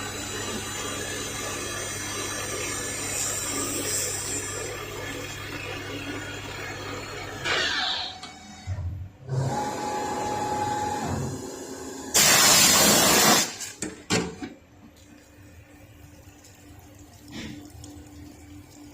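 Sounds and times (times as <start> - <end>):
workshop machine whine: 0.0 - 16.6
loud hiss: 12.2 - 13.6.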